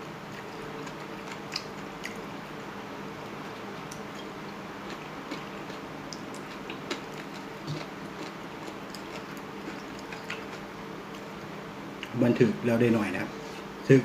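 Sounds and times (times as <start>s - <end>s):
steady low hum: 0.0s - 14.0s
person chewing: 0.3s - 2.3s, 3.8s - 11.2s.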